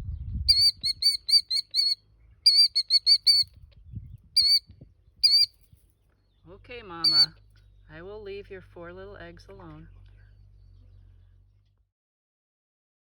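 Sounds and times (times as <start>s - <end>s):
killdeer shrill alarm calls: 0.5s - 3.5s, 4.4s - 4.6s, 5.2s - 5.5s, 7.1s - 7.3s.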